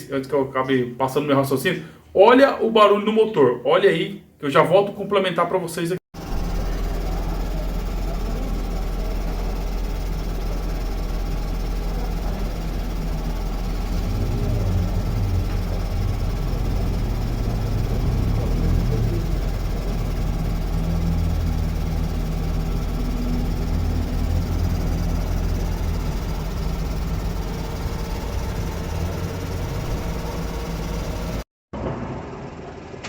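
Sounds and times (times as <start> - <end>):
car engine running: 6.2 - 31.5.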